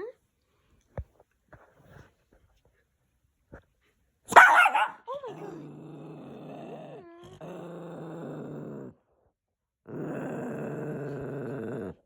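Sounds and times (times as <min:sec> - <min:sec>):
dog growling low: 0:05.1 - 0:12.0.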